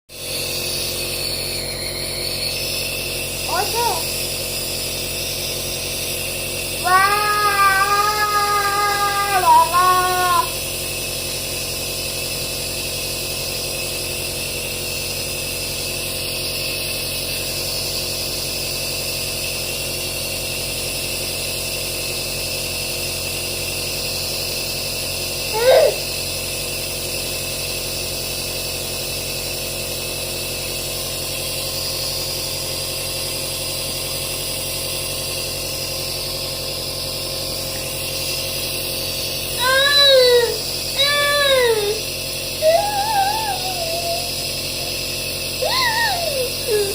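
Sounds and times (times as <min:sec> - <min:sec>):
steady machine hum: 0:00.2 - 0:20.6, 0:30.8 - 0:46.9.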